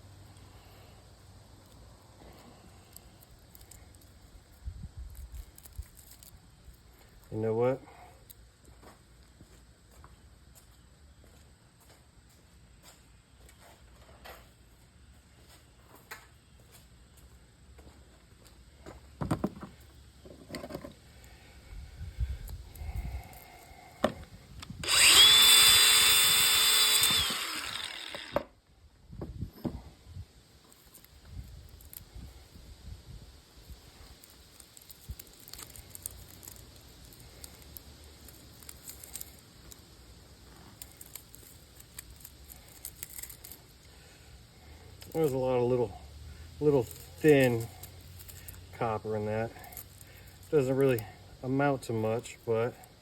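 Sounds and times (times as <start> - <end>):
parts being handled clicking: 2.9 - 4.3, 5.1 - 7.2, 34.1 - 44.0, 44.9 - 45.4, 46.7 - 48.7, 49.6 - 51.0.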